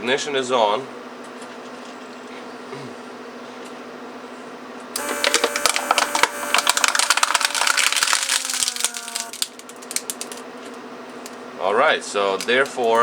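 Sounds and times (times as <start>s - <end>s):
vacuum pump hum: 5.0s - 9.4s
plastic bottle crackling and crumpling: 5.0s - 10.4s.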